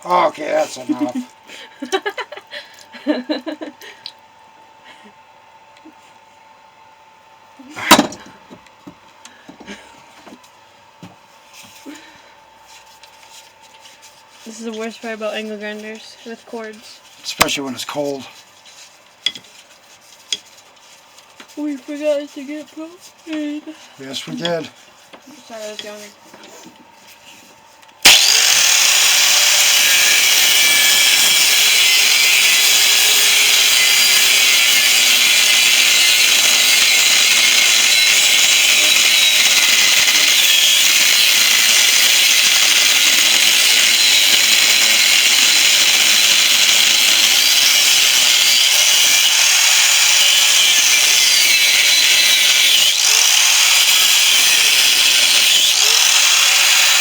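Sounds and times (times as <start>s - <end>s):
angle grinder cutting steel: 28.0s - 57.0s.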